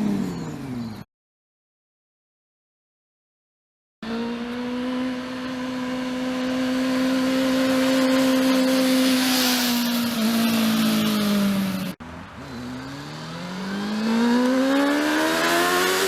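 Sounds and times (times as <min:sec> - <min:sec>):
motorcycle engine revving high: 0:04.0 - 0:16.0.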